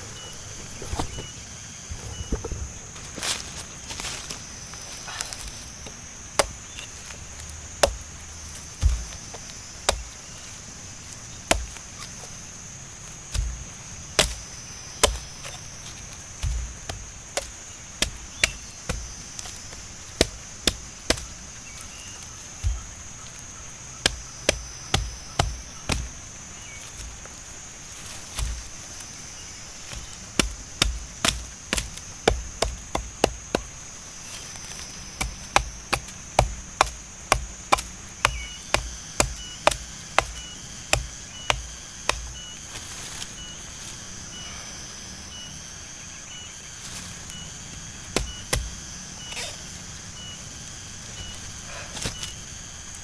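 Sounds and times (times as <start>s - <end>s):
coconut being chopped: 5.8s - 6.8s, 7.7s - 10.2s, 11.4s - 11.8s, 13.2s - 23.2s, 23.9s - 27.2s, 28.0s - 28.8s, 29.8s - 42.6s, 48.1s - 48.9s.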